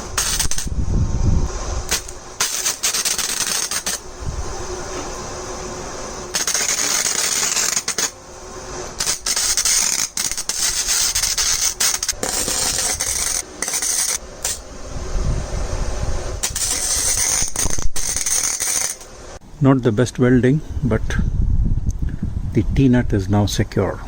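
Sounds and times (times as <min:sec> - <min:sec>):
welding arc crackling and hissing: 0:00.0 - 0:14.9, 0:16.0 - 0:19.4.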